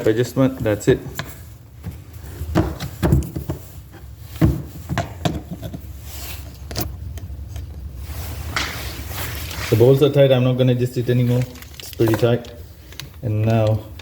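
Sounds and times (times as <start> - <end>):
tools clicking on metal parts: 11.8 - 14.0.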